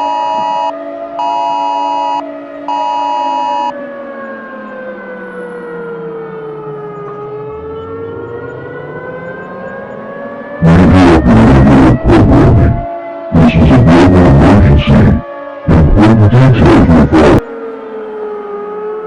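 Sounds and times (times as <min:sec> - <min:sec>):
electronic two-tone beep: 0:00.0 - 0:03.7
siren tone sliding in pitch: 0:00.0 - 0:19.0
harsh distorted noise bursts: 0:10.6 - 0:17.4.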